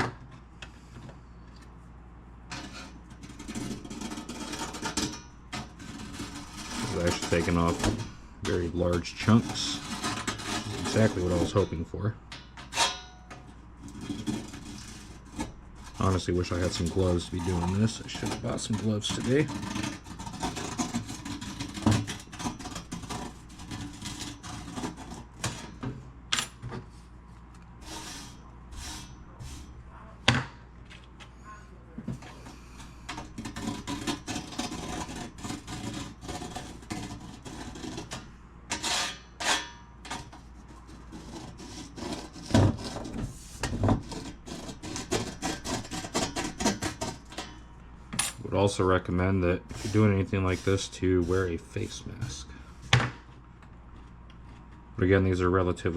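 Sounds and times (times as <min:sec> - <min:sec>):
razor blade scraping rust: 0:02.5 - 0:11.8, 0:12.6 - 0:25.8, 0:27.8 - 0:29.7, 0:32.8 - 0:47.6, 0:49.7 - 0:52.5.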